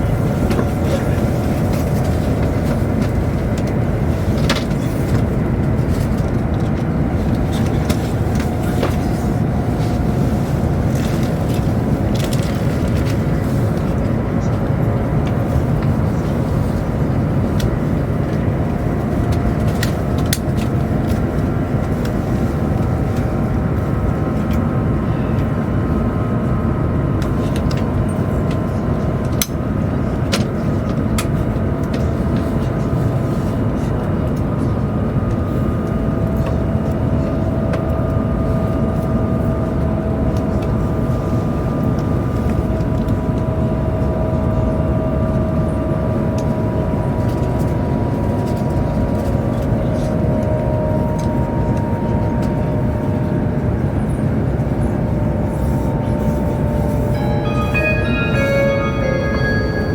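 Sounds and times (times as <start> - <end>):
train rumbling: 0.0 - 34.0, 54.8 - 59.9.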